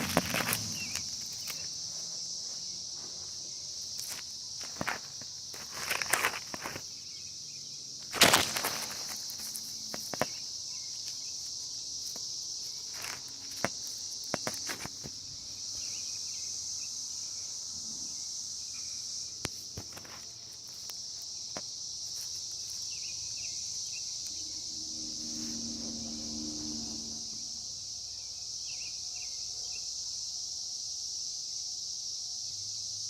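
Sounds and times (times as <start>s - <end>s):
insects chirring: 0.0s - 33.0s
low hum: 24.3s - 27.9s.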